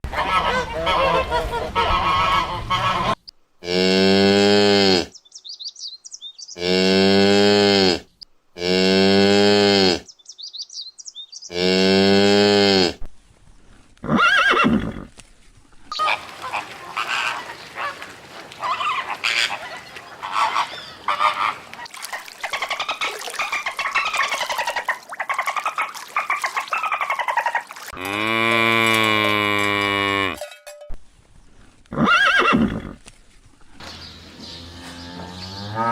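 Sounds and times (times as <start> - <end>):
cow mooing: 28.0 - 30.4, 34.7 - 35.9.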